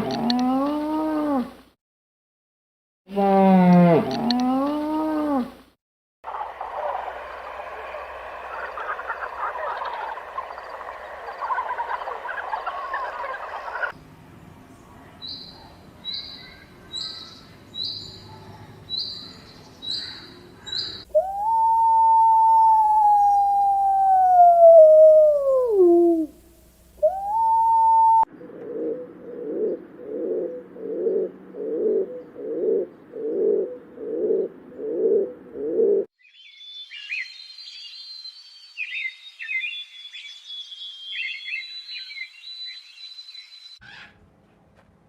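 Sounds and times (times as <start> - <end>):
low cooing bird calls: 16.1 - 26.4, 27.0 - 36.1
high bird chirping and trilling: 36.2 - 44.1.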